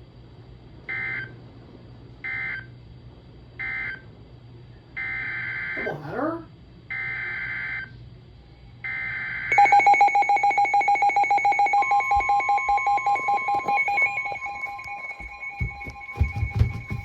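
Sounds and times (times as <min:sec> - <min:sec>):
steady warning alarm tone: 0:00.9 - 0:01.4, 0:02.2 - 0:02.8, 0:03.6 - 0:04.1, 0:05.0 - 0:05.9, 0:06.9 - 0:07.9, 0:08.8 - 0:17.0
rapid high alarm beeps: 0:08.9 - 0:17.0.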